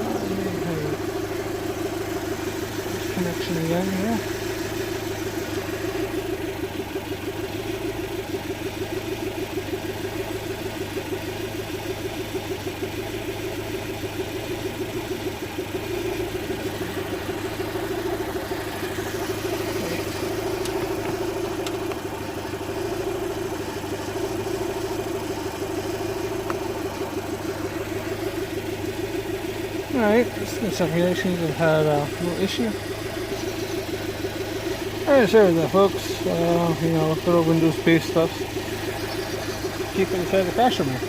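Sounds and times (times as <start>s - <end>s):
car engine idling with pulsing: 0.0s - 41.0s.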